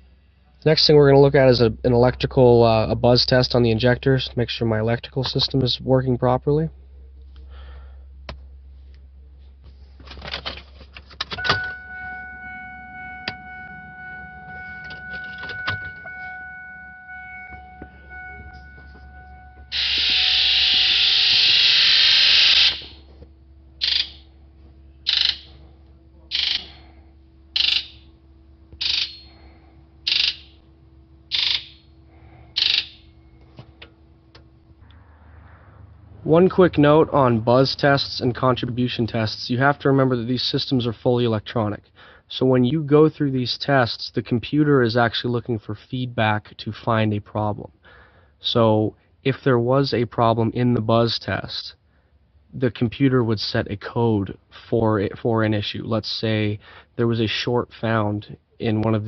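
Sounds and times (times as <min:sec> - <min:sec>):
faint steady whine: 0:00.0 - 0:59.0
fuel injectors buzzing: 0:09.9 - 0:35.0.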